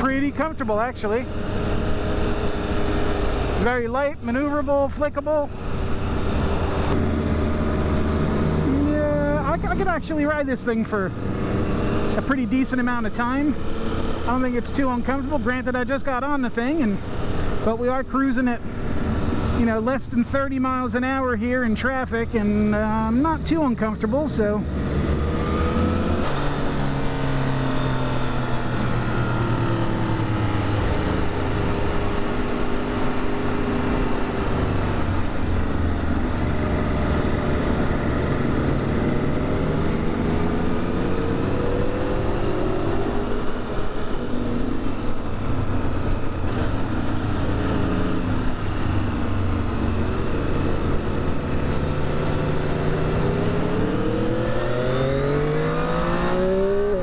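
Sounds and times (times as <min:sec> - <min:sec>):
motorcycle engine revving: 0:00.0 - 0:04.4, 0:05.5 - 0:14.5, 0:24.2 - 0:57.0
wind and road noise: 0:00.0 - 0:57.0.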